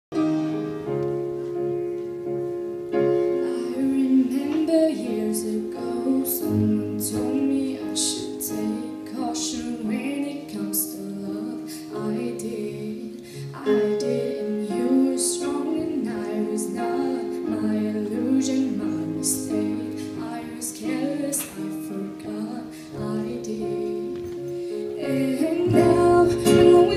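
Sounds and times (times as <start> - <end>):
woman singing: 3.3 - 26.9.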